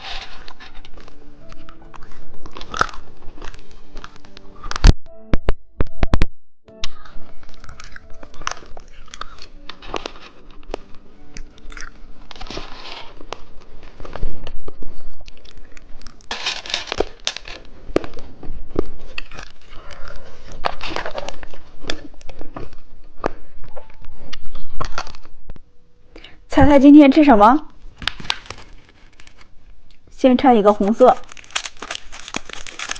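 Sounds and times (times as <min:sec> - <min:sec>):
candy crunching and chewing: 0:00.3 - 0:04.9, 0:06.9 - 0:23.6, 0:31.0 - 0:32.9.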